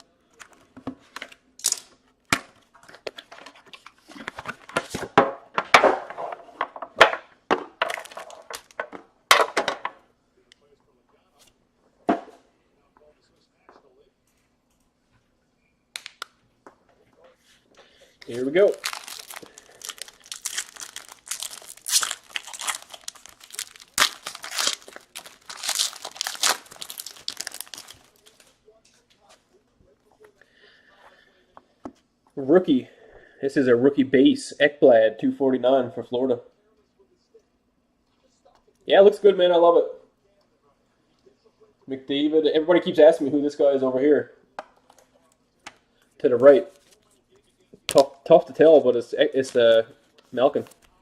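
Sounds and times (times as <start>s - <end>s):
packaging being torn and crinkled: 18.3s - 28.6s.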